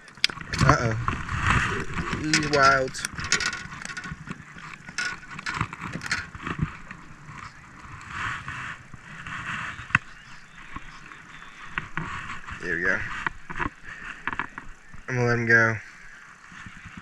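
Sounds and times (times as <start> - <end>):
reel clicks: 0.0 - 10.1
fishing reel whirring: 1.6 - 6.9.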